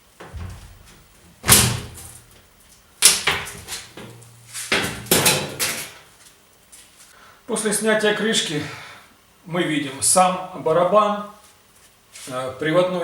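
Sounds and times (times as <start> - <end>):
sheet metal bangs and rattles: 0.0 - 6.0.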